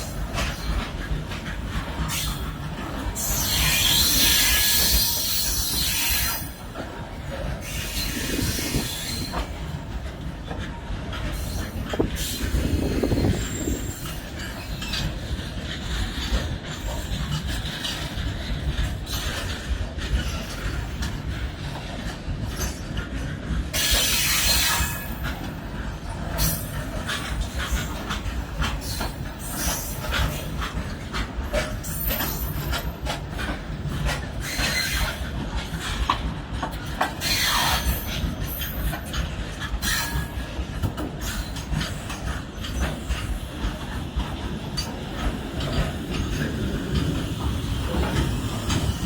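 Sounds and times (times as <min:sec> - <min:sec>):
freight train wheels rumbling: 0:00.0 - 0:49.0.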